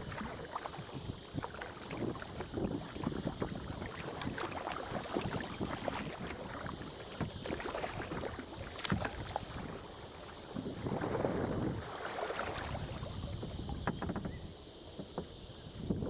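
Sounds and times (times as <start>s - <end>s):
kayak paddles splashing water: 0.0s - 15.5s.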